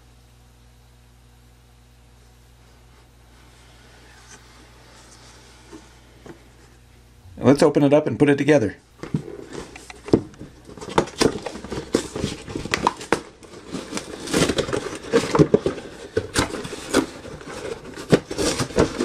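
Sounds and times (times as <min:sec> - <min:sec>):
packaging rustling: 0:09.0 - 0:19.0.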